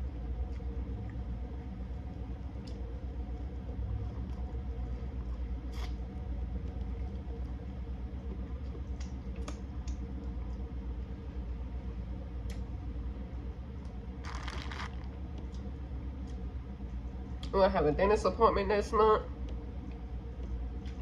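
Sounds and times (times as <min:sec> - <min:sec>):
steady low hum: 0:00.0 - 0:21.0
crunches of eating: 0:00.3 - 0:11.2, 0:13.5 - 0:17.5.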